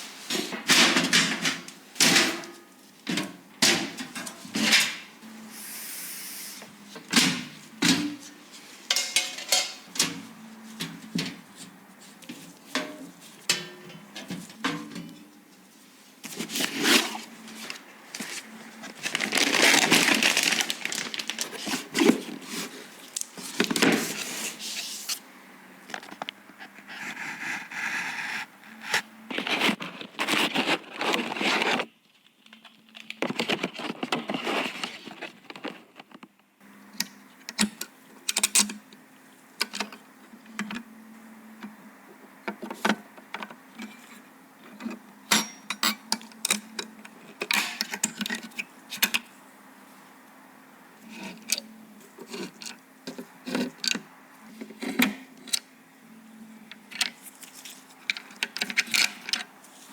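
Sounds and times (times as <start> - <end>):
faint steady hum: 0.0 - 59.9.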